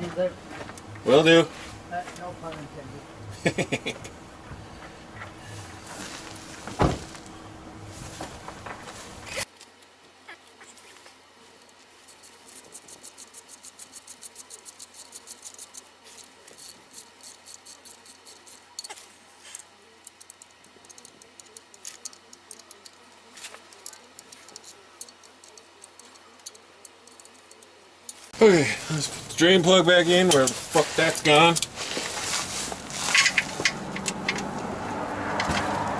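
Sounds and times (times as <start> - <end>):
hand ratchet clicking: 11.6 - 28.3.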